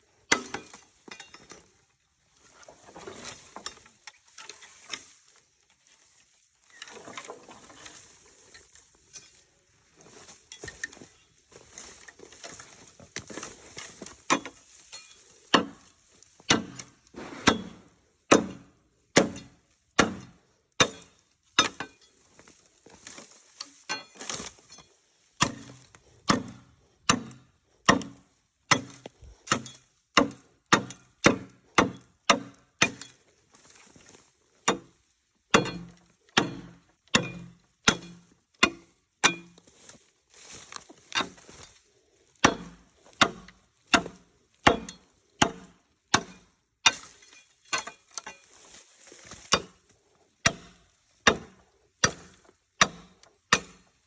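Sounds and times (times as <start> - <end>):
blade chopping bamboo: 15.5 - 15.8, 16.5 - 22.0, 25.4 - 33.2, 35.5 - 39.6, 42.4 - 49.8, 50.4 - 53.9.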